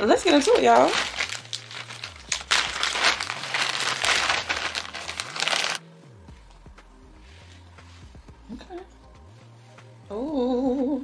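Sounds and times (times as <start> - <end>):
packaging crinkling and rustling: 0.0 - 5.8.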